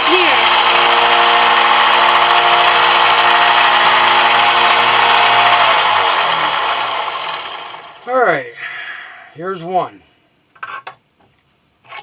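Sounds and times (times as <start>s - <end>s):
power tool motor whining: 0.0s - 8.1s.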